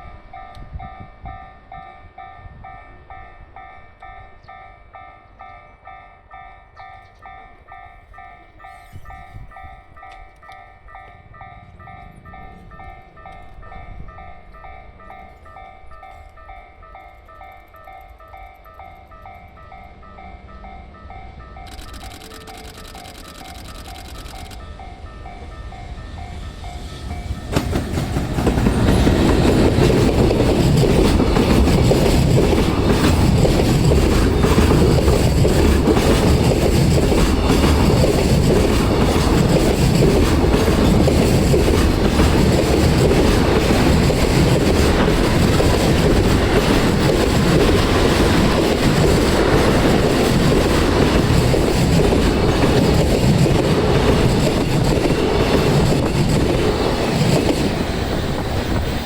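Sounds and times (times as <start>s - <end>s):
freight train passing: 0.0s - 59.0s
wheel clatter over rail joints: 27.4s - 59.0s.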